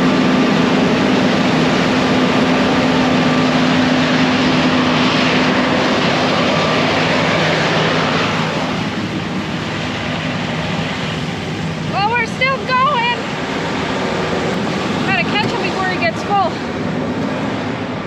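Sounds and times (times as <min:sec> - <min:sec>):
diesel engine running: 0:00.0 - 0:18.0
steady hum: 0:07.6 - 0:18.0.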